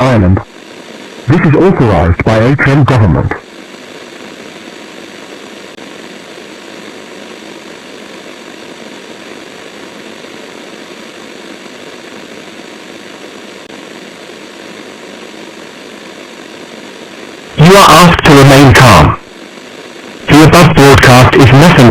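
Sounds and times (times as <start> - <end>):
broadcast static hiss: 0.0 - 21.9.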